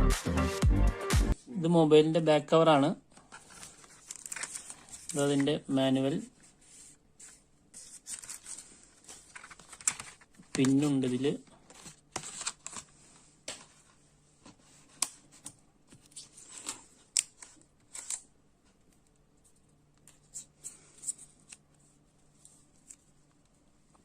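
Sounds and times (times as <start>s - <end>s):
phone box packaging handled: 11.7s - 12.9s.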